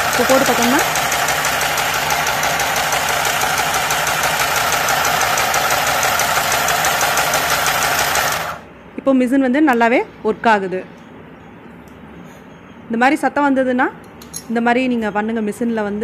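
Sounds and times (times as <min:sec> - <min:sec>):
sewing machine stitching: 0:00.0 - 0:08.6.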